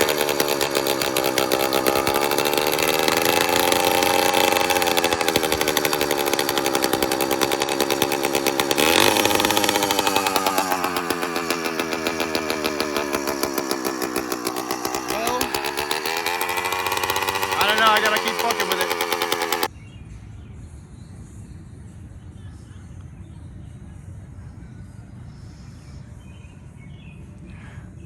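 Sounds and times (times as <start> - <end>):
two-stroke bicycle engine running: 0.0 - 19.7.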